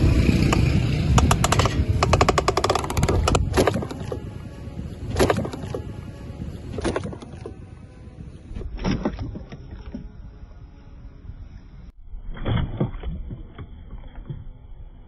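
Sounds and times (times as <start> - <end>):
water splashing and sloshing: 3.0 - 6.0, 6.6 - 10.6, 12.2 - 14.8.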